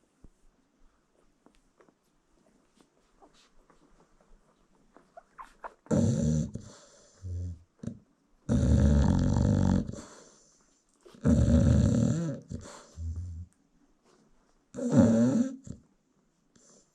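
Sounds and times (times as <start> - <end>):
dog snoring: 5.9 - 10.3, 11.1 - 13.5, 14.8 - 15.8.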